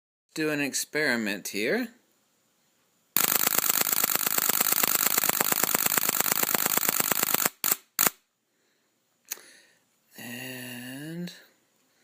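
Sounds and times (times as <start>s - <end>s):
camera shutter burst clattering: 3.2s - 8.2s
single camera shutter clicks: 3.2s - 8.2s.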